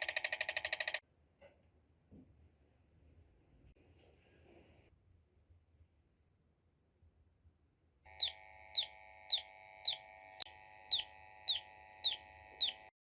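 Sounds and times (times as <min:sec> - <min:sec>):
faint steady electronic tone: 0:08.1 - 0:12.9
electronic falling chirps: 0:08.2 - 0:12.9.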